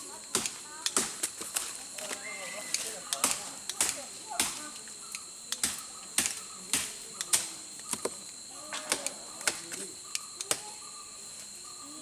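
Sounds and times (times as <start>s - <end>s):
high insect buzz: 0.0s - 12.0s
sharp crisp snaps of rice cutting: 2.7s - 8.0s.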